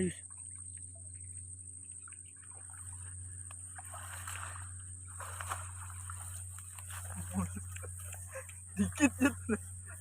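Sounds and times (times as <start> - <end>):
water sloshing and splashing: 0.0 - 10.0.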